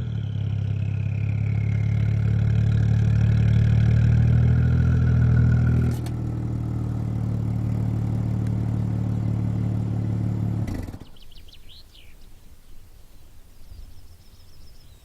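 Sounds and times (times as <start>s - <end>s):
car engine idling: 0.0s - 11.3s.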